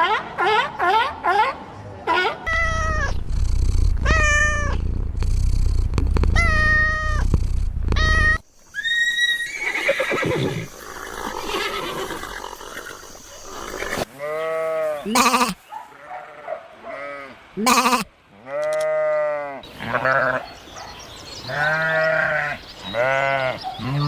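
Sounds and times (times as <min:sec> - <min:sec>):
steady low rumble: 0:02.5 - 0:08.4
farm animal calling: 0:08.0 - 0:20.6, 0:21.5 - 0:24.0
rough animal sounds: 0:09.6 - 0:24.0.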